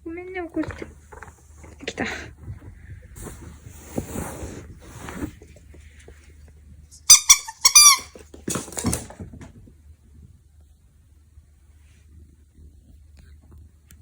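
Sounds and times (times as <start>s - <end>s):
squeaky toy squeaks: 7.0s - 8.2s.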